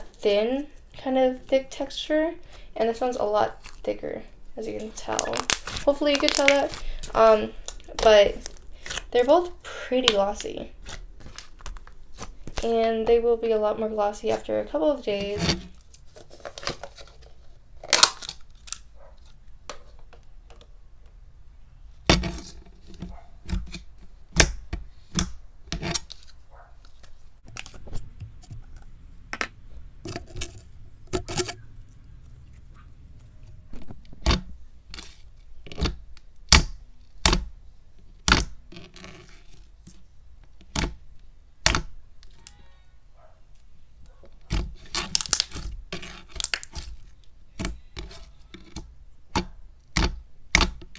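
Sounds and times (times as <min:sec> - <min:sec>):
squishy slime rustles: 0:02.4 - 0:12.8, 0:26.0 - 0:33.8.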